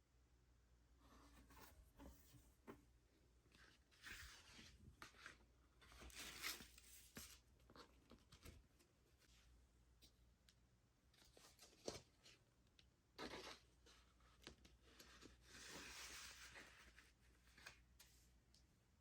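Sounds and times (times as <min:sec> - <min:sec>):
record sleeves rustling: 0:14.8 - 0:18.1.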